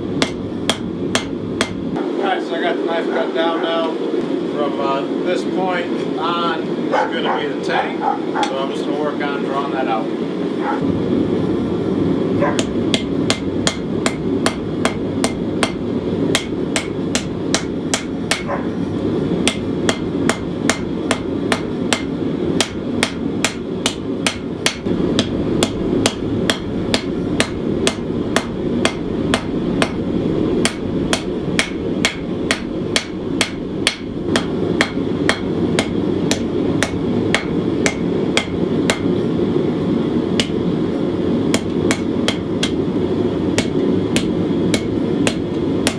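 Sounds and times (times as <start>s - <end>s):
steady rushing noise: 0.0s - 45.9s
hammer striking steel on anvil: 0.2s - 2.0s, 8.4s - 8.7s, 12.6s - 39.3s, 40.3s - 45.9s.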